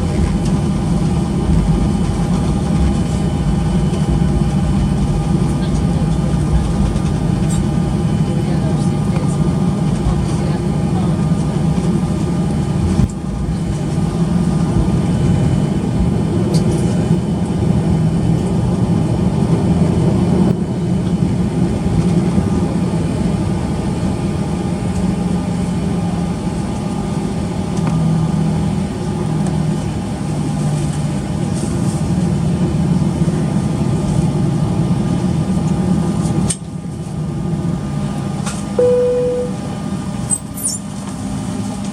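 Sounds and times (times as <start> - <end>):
aircraft engine hum: 0.0 - 41.9
steady tones: 38.8 - 39.7
short single tone: 38.8 - 39.8.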